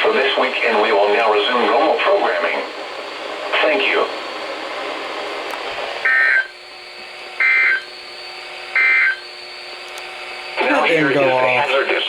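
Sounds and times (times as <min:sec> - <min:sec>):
radio hiss: 0:00.0 - 0:09.3, 0:10.2 - 0:12.0
two-tone digital data bursts: 0:08.8 - 0:09.2.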